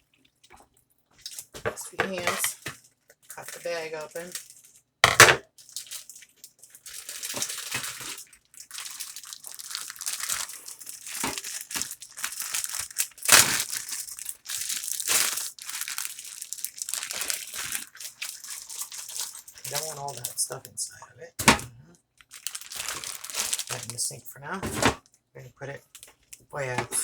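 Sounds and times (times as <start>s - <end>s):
plastic packaging crinkling and tearing: 1.2s - 4.9s, 5.5s - 20.8s, 22.2s - 24.1s.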